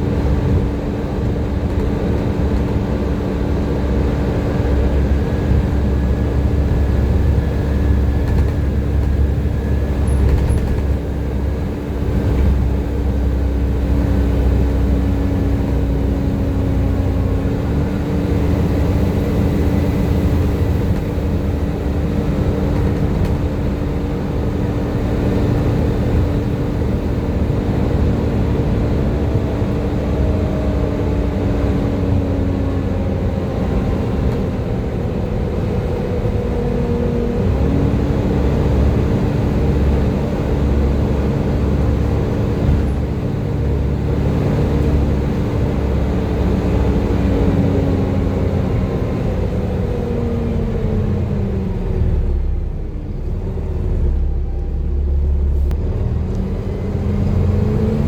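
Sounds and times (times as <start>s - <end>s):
bus engine drone: 0.0s - 58.0s
bus whine: 0.0s - 58.0s.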